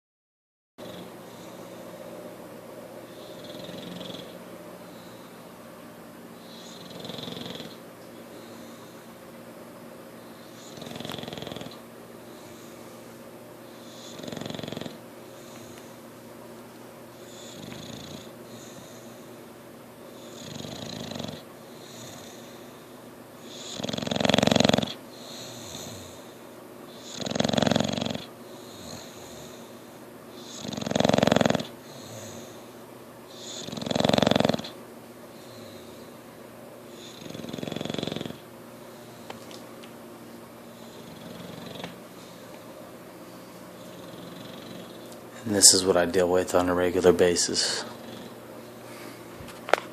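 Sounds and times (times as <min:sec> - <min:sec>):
dog snoring: 0:00.8 - 0:01.9, 0:03.0 - 0:05.4, 0:06.4 - 0:07.8, 0:10.2 - 0:13.0, 0:13.6 - 0:16.0, 0:17.2 - 0:19.3, 0:20.1 - 0:36.2, 0:36.9 - 0:39.3, 0:40.6 - 0:42.7, 0:43.4 - 0:46.0, 0:46.6 - 0:48.4.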